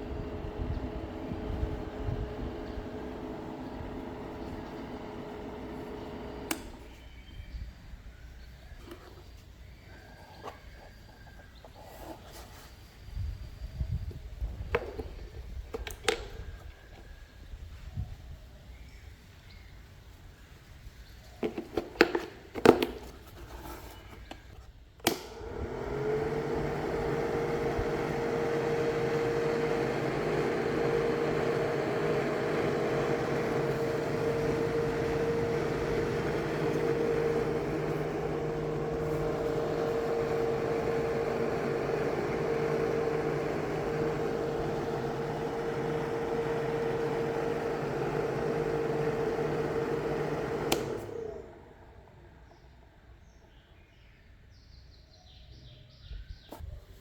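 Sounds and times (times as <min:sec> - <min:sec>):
small electric fan motor whine: 0:00.0 - 0:19.7, 0:21.4 - 0:54.0
switch click: 0:06.4 - 0:07.0, 0:25.0 - 0:25.5.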